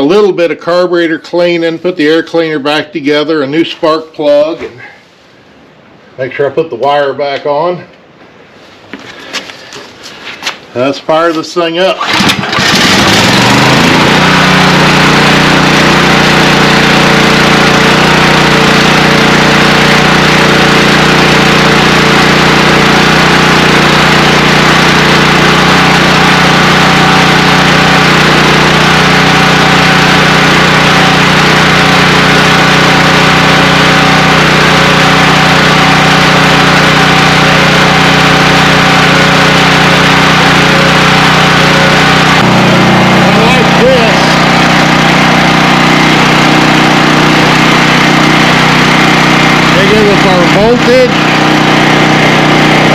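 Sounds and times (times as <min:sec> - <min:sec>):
portable generator engine running: 0:11.9 - 0:52.9.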